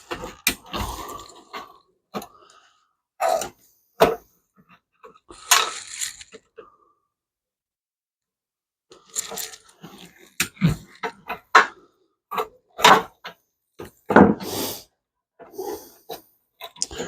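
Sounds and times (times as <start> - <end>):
metal parts and tools clinking: 5.3 - 6.4, 9.0 - 11.1.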